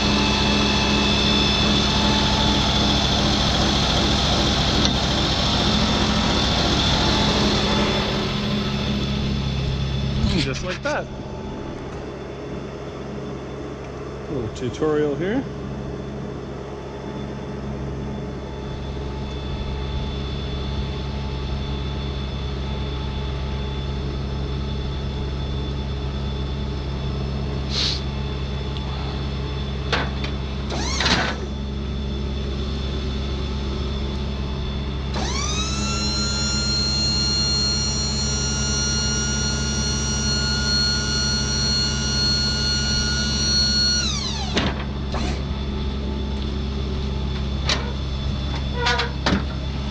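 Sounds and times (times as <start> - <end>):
diesel engine running: 0.0 - 49.9
high whine: 0.0 - 49.9.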